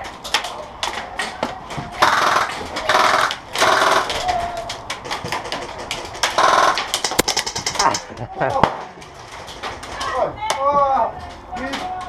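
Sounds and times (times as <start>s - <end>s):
airsoft guns firing automatic bursts: 2.0s - 4.3s, 5.8s - 8.0s.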